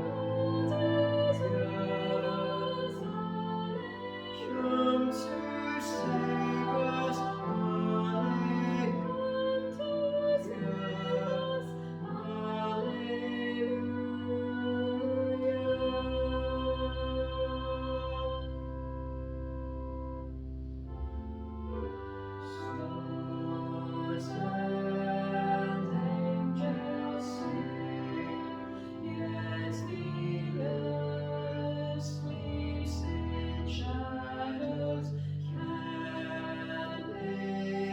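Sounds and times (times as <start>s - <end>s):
person singing: 0.0s - 18.5s
keyboard chords: 0.0s - 37.9s
slow music with held notes: 0.0s - 37.9s.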